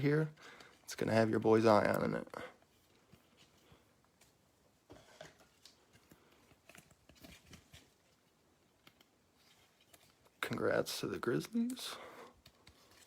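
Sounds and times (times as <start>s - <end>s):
trading cards rustling and clicking: 5.3s - 13.0s.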